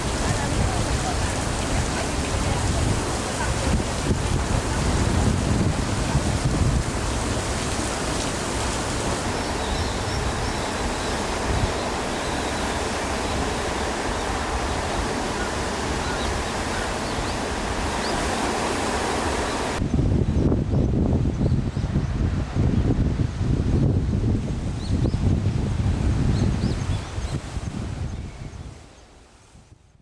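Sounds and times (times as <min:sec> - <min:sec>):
surf breaking on rocky shore: 0:00.0 - 0:19.8.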